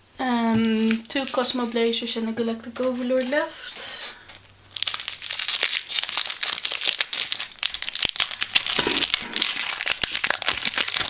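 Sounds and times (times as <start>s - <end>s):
foil wrapper crinkling: 0.7s - 1.8s, 4.2s - 11.0s.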